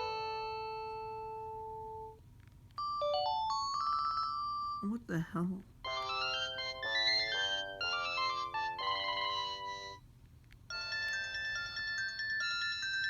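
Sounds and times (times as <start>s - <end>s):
higher-pitched ringtone: 0.0s - 1.4s, 2.8s - 4.8s, 5.9s - 10.0s, 10.7s - 13.0s
polyphonic phone ringtone: 0.0s - 2.2s, 2.8s - 4.8s, 5.9s - 10.0s, 10.7s - 13.0s.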